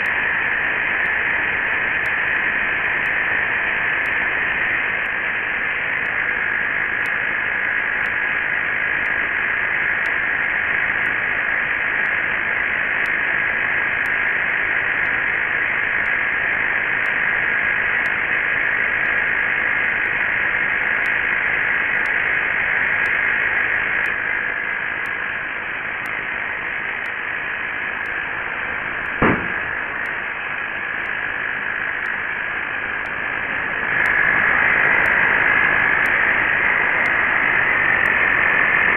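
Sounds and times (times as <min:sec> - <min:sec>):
air compressors running with whine: 0:00.0 - 0:38.9
sharp click: 0:29.0 - 0:29.7.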